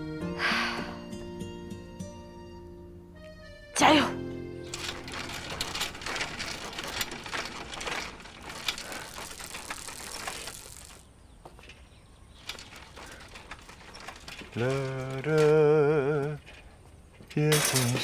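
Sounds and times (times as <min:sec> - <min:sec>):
rapid clicking and rattling: 0:04.6 - 0:18.0.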